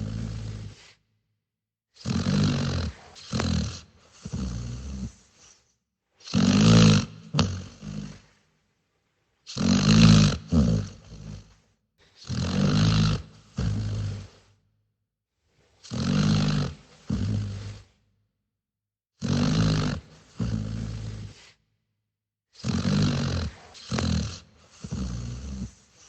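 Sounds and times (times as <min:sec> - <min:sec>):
dog snoring: 0:00.0 - 0:01.0, 0:02.0 - 0:08.4, 0:09.5 - 0:14.6, 0:15.7 - 0:18.0, 0:19.2 - 0:21.6, 0:22.6 - 0:26.0.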